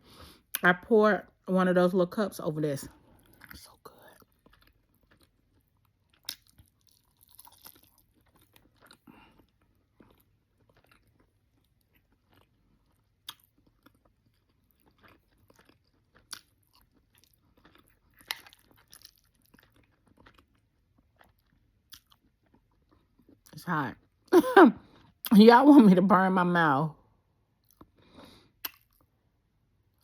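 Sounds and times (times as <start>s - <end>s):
person chewing and lip-smacking: 3.2s - 24.2s, 28.6s - 29.1s.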